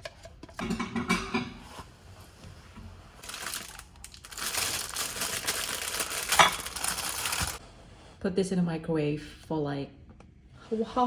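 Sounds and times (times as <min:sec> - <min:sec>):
plastic wrapping crinkling: 0:03.2 - 0:07.6.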